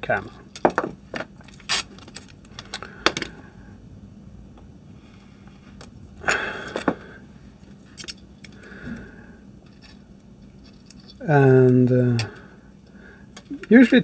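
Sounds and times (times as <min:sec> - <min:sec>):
tape rustling: 0:00.6 - 0:03.2
tape tearing: 0:01.5 - 0:02.3
tape being snipped: 0:01.6 - 0:02.1.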